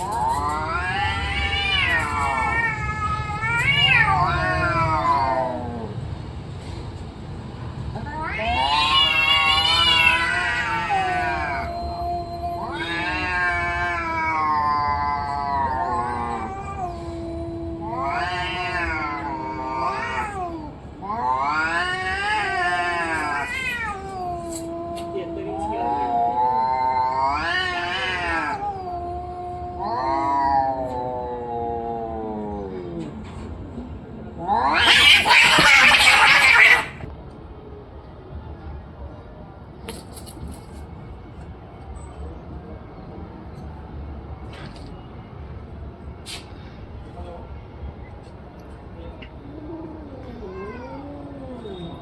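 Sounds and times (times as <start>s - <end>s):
cat yowling: 0.0s - 6.0s, 8.0s - 33.2s, 34.3s - 37.1s, 49.1s - 52.0s.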